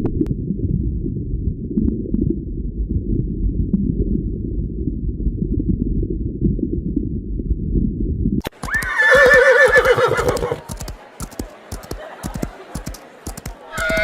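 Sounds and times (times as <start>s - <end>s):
low rumble: 0.0s - 8.4s
sharp clicks: 8.4s - 9.0s, 10.2s - 14.0s
horse whinnying: 8.6s - 10.6s, 13.7s - 14.0s.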